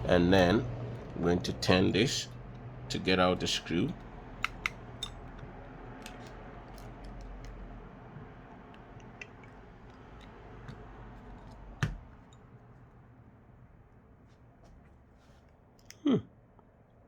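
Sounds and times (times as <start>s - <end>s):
low steady hum: 0.0s - 17.0s
small tools clicking on metal: 4.4s - 7.6s.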